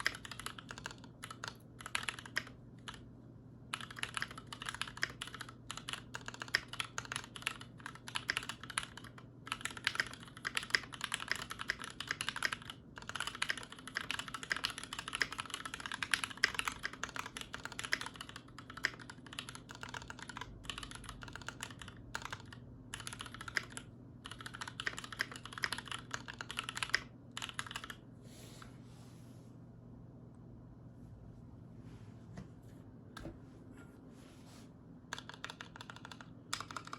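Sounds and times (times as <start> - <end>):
mechanical keyboard typing: 0.0 - 3.0, 3.7 - 28.0, 35.1 - 36.9.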